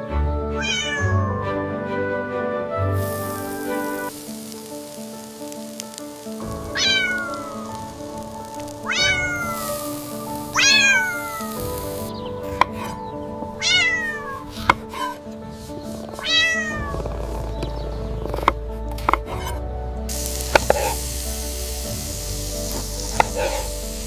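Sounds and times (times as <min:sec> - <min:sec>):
soft background music: 0:00.0 - 0:24.0
cat meowing: 0:00.6 - 0:01.1, 0:06.6 - 0:07.8, 0:08.8 - 0:09.6, 0:10.6 - 0:11.6, 0:13.6 - 0:15.2, 0:16.2 - 0:17.0.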